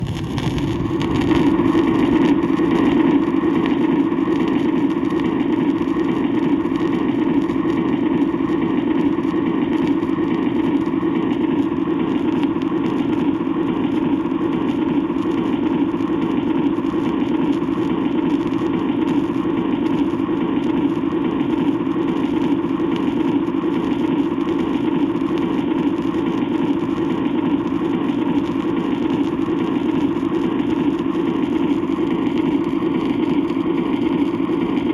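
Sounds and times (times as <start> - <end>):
train running: 0.0 - 7.1
record surface noise: 0.0 - 34.9.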